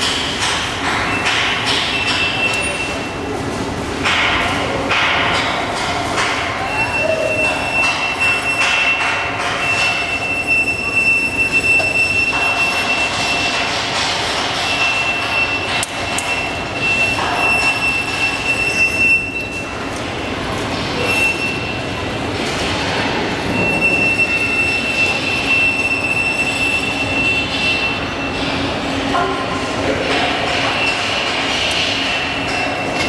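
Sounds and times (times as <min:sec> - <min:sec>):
machinery rumbling: 0:00.0 - 0:33.0
high-pitched metallic squeal: 0:06.4 - 0:19.9, 0:20.5 - 0:33.0.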